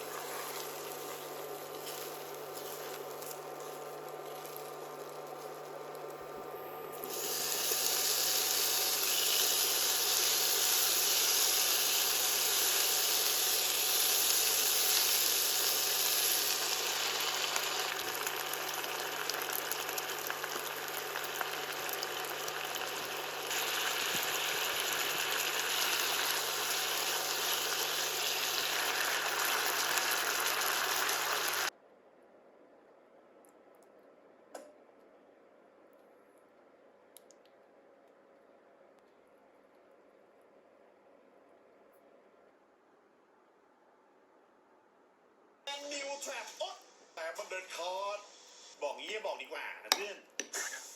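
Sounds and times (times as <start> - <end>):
water running from kitchen tap: 7.0 - 31.7.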